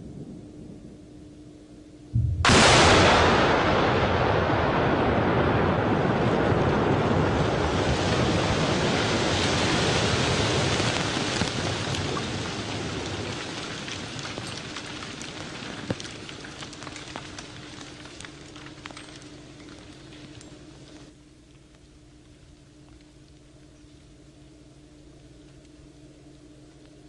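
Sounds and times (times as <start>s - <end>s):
explosion rumble: 2.2s - 16.6s
debris falling: 2.2s - 21.0s.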